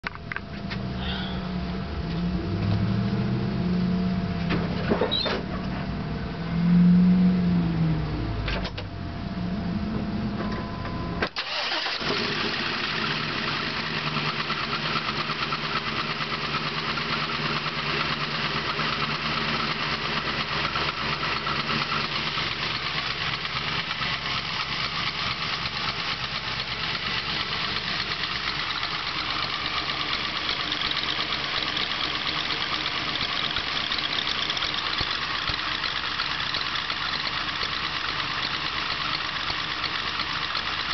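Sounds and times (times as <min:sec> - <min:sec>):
car engine idling: 0:11.3 - 0:40.9
engine ticking clatter: 0:11.4 - 0:40.9.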